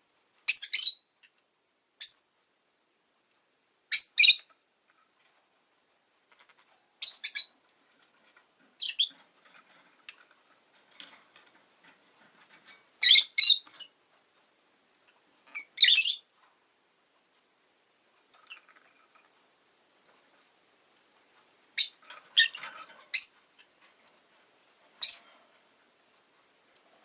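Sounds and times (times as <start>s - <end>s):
lovebird chirping: 0.5s - 1.1s, 2.0s - 2.3s, 3.9s - 4.6s, 7.0s - 7.6s, 8.8s - 9.2s, 13.0s - 14.0s, 15.5s - 16.3s, 21.7s - 23.4s, 25.0s - 25.3s.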